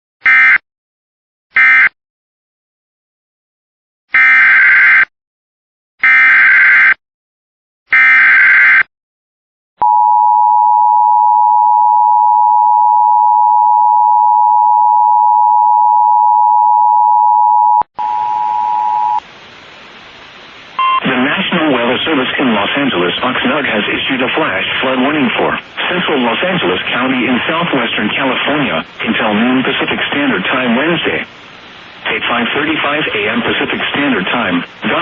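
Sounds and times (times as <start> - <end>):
steady attention tone: 9.8 - 19.3, 20.7 - 21.3
radio hiss: 19.0 - 35.0.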